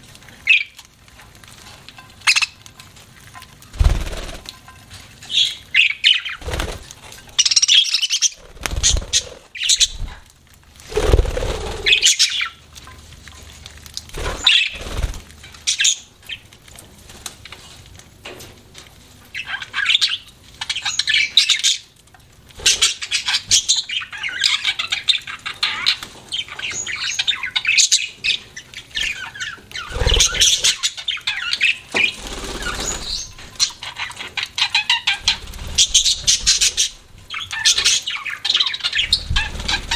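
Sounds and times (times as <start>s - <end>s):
budgerigars chirping: 2.2s - 2.6s, 7.4s - 10.2s, 11.7s - 12.6s, 22.6s - 39.9s.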